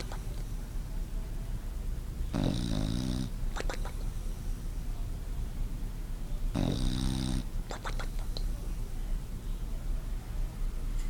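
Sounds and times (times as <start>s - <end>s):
bulldog snoring: 2.3s - 4.0s, 6.5s - 8.2s.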